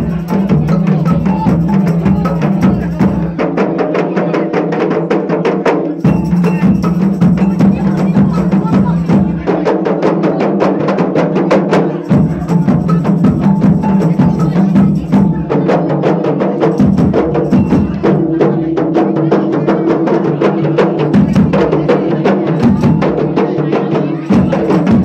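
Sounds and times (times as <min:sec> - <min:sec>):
fast percussion: 0:00.0 - 0:25.0.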